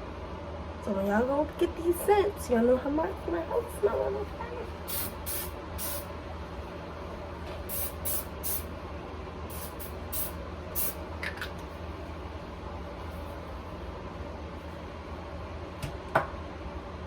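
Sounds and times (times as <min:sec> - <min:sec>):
room spray hissing puffs: 0:04.7 - 0:06.1, 0:07.6 - 0:08.7, 0:09.5 - 0:11.0.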